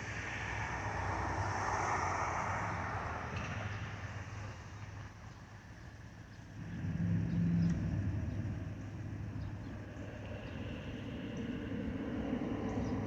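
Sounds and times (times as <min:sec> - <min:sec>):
jet engine rumble: 0:06.5 - 0:13.0.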